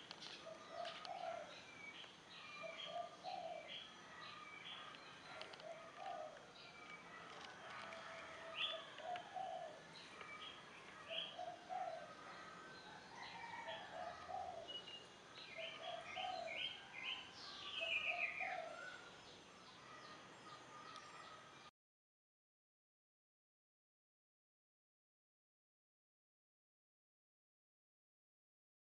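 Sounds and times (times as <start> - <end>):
birds chirping: 0.0 - 21.7
dove cooing: 0.4 - 1.5, 2.6 - 3.8, 4.8 - 6.5, 7.1 - 9.9, 11.0 - 14.8, 15.6 - 16.8, 17.8 - 19.0.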